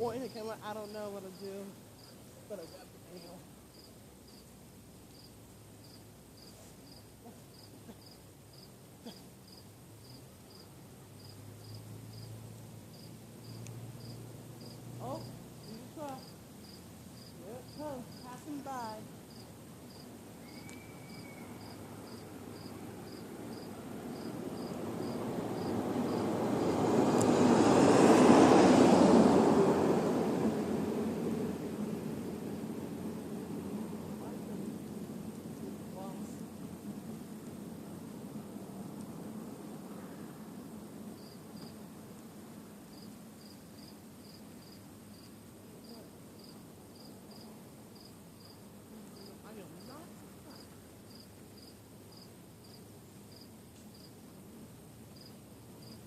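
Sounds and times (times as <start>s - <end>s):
faint insect chirping: 0.0s - 27.3s, 32.5s - 56.0s
low outdoor background noise: 0.0s - 56.0s
truck driving past: 21.1s - 35.2s.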